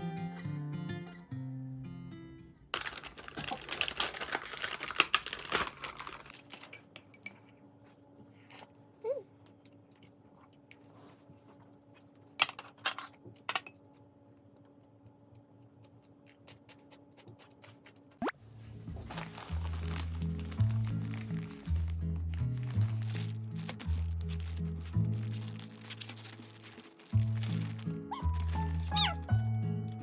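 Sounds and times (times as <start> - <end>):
small objects clicking and tapping: 2.8 - 7.1.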